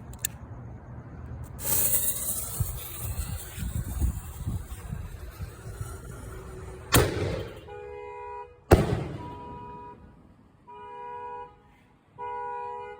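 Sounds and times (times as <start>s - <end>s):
firework bangs: 1.5s - 8.1s, 8.7s - 10.0s.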